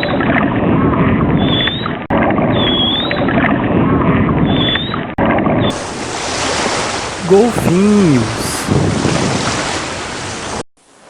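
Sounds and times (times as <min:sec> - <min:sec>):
dolphin whistles: 0:01.4 - 0:01.9, 0:04.5 - 0:05.0
churning water: 0:05.7 - 0:10.6
rushing water and wind: 0:05.7 - 0:11.0.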